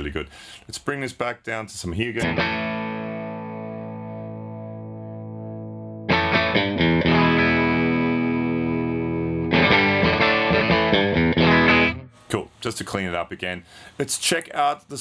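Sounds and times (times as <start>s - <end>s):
electric guitar chords: 2.2s - 12.1s.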